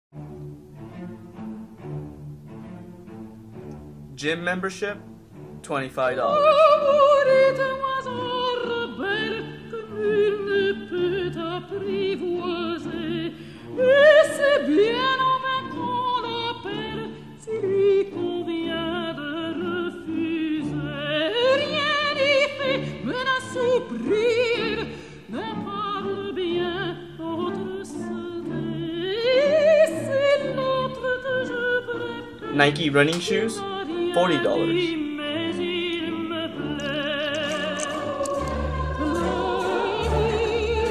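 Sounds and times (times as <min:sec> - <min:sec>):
musical accompaniment: 0:00.2 - 0:40.9
operatic voice singing with vibrato: 0:06.2 - 0:40.9.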